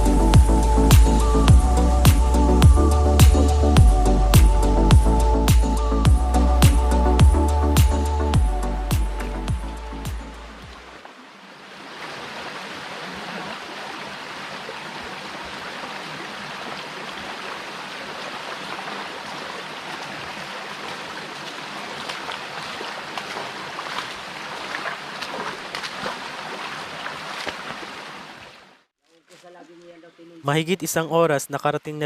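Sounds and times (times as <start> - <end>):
rushing water: 5.4 - 28.9.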